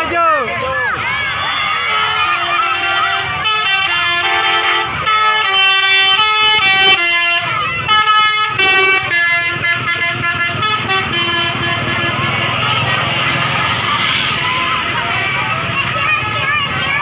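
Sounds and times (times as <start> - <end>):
multi-tone bus air horn: 1.8 - 13.5.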